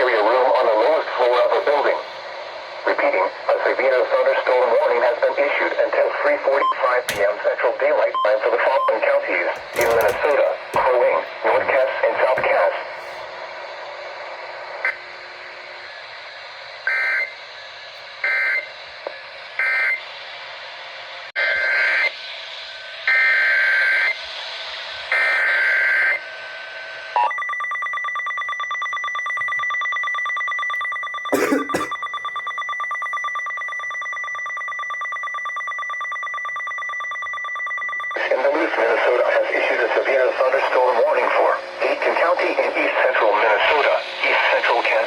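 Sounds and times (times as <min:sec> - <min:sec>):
radio hiss: 0:00.0 - 0:02.2, 0:02.8 - 0:13.3, 0:38.2 - 0:45.0
radio crackle: 0:02.9 - 0:13.2, 0:38.2 - 0:45.0
steady warning alarm tone: 0:04.0 - 0:13.3, 0:16.8 - 0:18.8, 0:21.4 - 0:45.0.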